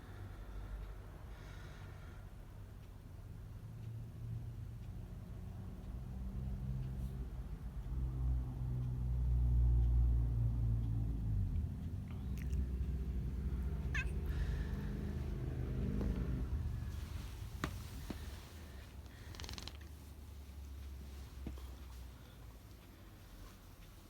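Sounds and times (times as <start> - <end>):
cat purring: 11.9 - 18.0.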